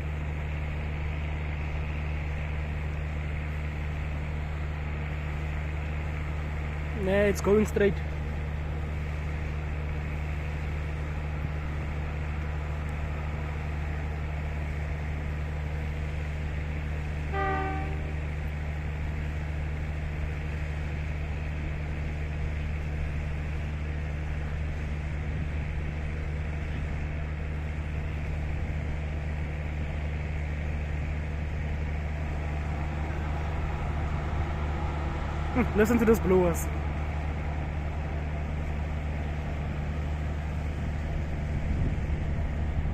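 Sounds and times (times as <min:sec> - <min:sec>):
locomotive blowers droning: 0:00.0 - 0:42.9
short horn toot: 0:17.3 - 0:18.2.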